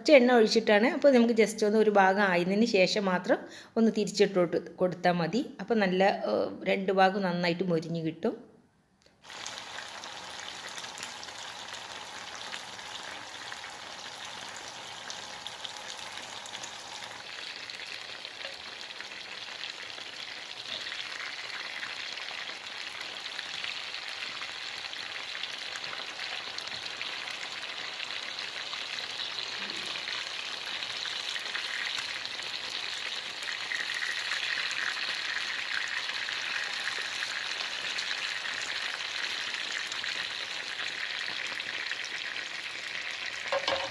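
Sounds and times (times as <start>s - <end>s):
chicken sizzling in a pan: 9.2s - 43.9s.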